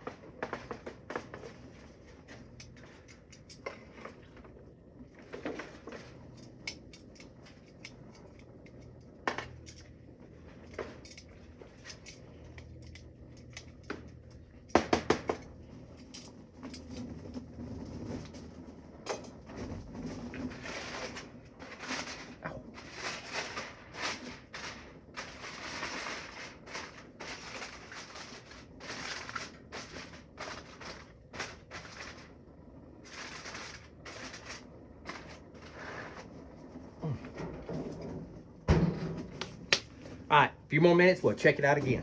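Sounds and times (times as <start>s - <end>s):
scraping and rustling: 0.0s - 14.4s, 15.4s - 40.3s
cooking gear clattering: 0.0s - 17.1s.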